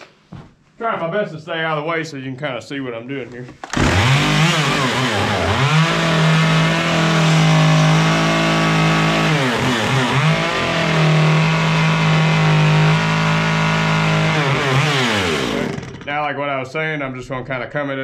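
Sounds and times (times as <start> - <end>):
chainsaw cutting wood: 3.6 - 16.2.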